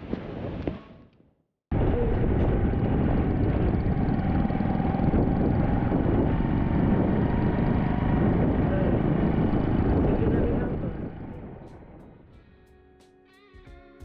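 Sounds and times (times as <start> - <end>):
wind and road noise: 0.0 - 1.1, 1.7 - 12.5
motorcycle engine running: 1.7 - 12.3.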